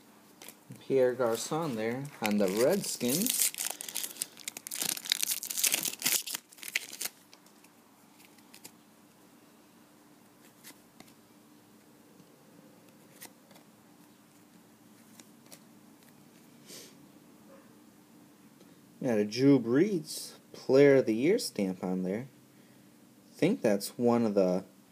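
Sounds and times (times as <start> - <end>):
foil wrapper crinkling and tearing: 1.3 - 8.7
soft clicks of cards handled: 11.8 - 16.5.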